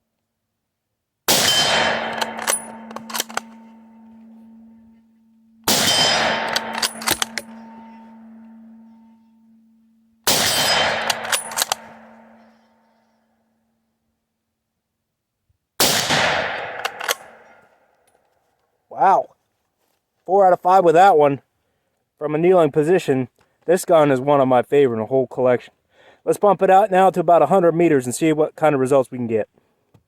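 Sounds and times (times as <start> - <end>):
rifle shots: 1.3 - 4.9, 5.6 - 9.1, 10.3 - 12.6, 15.8 - 17.6
steel target gong ringing: 1.5 - 12.6
sharp clicks: 1.9 - 4.6, 5.7 - 8.8, 10.5 - 12.5, 16.6 - 17.4.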